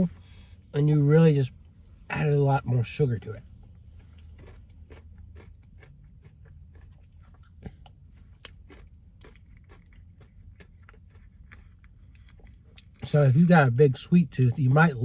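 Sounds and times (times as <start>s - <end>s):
low steady hum: 0.0s - 15.0s
person chewing crunchy food: 3.6s - 13.0s.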